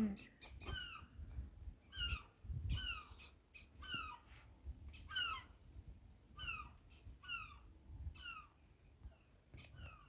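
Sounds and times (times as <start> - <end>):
wind rumble on microphone: 0.0 - 3.2, 3.9 - 8.4.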